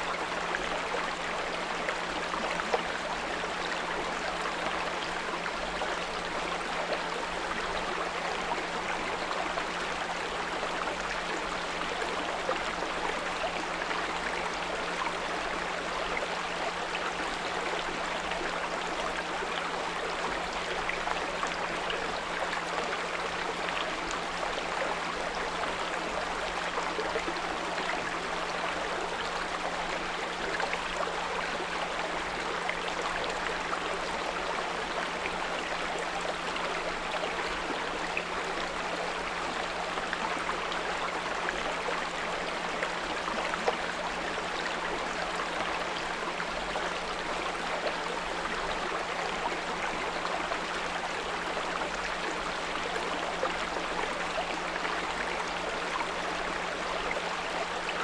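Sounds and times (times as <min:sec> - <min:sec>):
brook babbling: 0:00.0 - 0:58.0.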